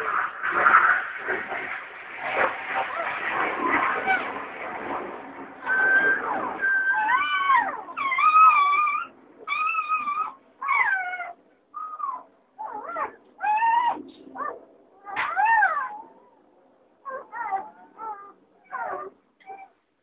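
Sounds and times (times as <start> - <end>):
puppies whining and yelping: 5.6 - 19.8.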